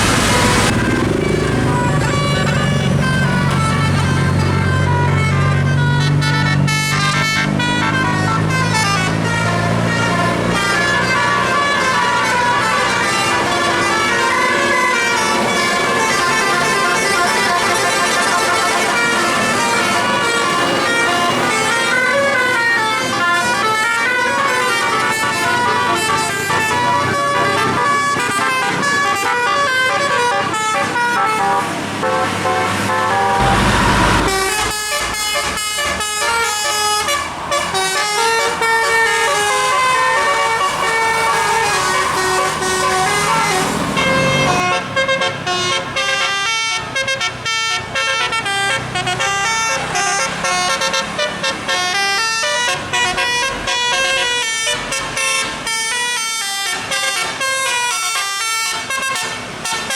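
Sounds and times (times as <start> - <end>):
loud rush of noise: 0.0 - 4.4, 31.7 - 44.5
bus musical air horn tune: 0.0 - 59.9.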